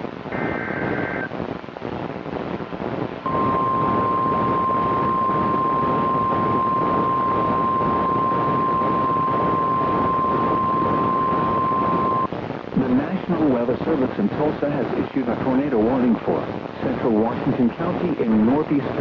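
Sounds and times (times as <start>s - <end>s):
radio static: 0.0s - 19.0s
steady alarm tone: 3.3s - 12.3s.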